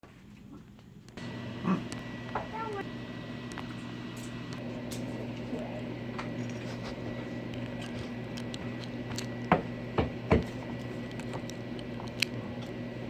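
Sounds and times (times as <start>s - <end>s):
steady low hum: 1.0s - 13.0s
knocks on tabletop: 9.5s - 10.5s.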